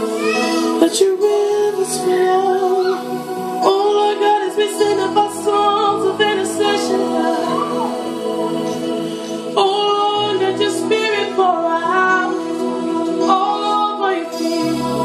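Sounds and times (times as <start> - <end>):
sustained keyboard chords: 0.0 - 15.0
women singing worship melody: 0.0 - 15.0
low bass notes: 3.5 - 8.8.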